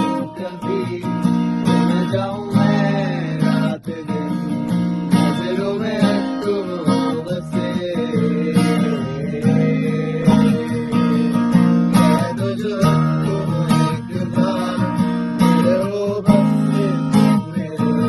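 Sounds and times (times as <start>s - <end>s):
person singing: 0.0s - 18.0s
strummed acoustic guitar: 0.0s - 18.0s.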